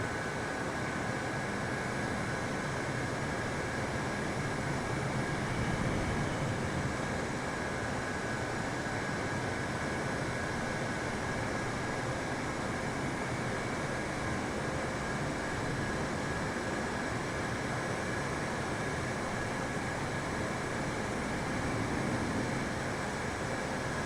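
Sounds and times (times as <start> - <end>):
faint steady whine: 0.0 - 24.0
jet airliner engine rush: 14.0 - 24.0.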